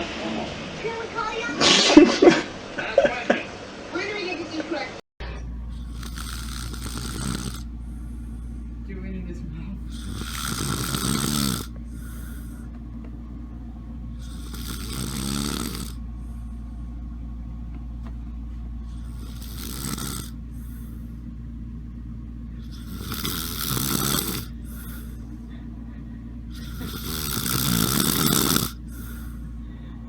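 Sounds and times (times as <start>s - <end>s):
steady low hum: 0.0s - 30.0s
person snoring: 5.7s - 8.8s, 9.8s - 12.8s, 14.1s - 16.7s, 18.8s - 21.1s, 22.6s - 25.7s, 26.5s - 29.9s.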